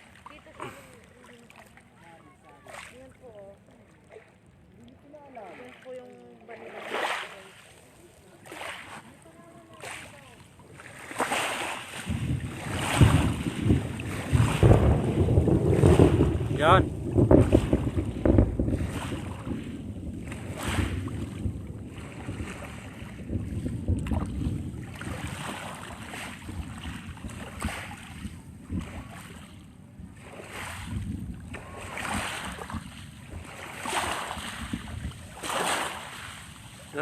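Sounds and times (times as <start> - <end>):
rough waves splashing: 0.0 - 37.0
wind buffeting microphone: 10.6 - 37.0.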